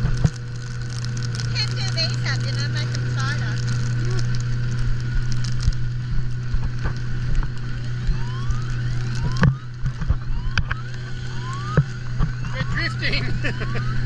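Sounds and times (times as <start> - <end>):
outboard motor humming: 0.0 - 14.0
short rising whines: 1.2 - 14.0.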